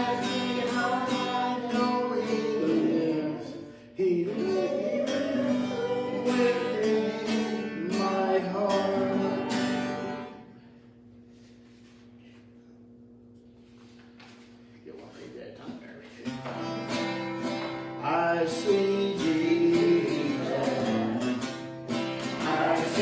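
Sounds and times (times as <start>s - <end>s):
person singing: 0.0s - 10.2s, 18.0s - 21.4s, 22.3s - 23.0s
acoustic guitar strumming: 0.0s - 10.7s, 16.3s - 23.0s.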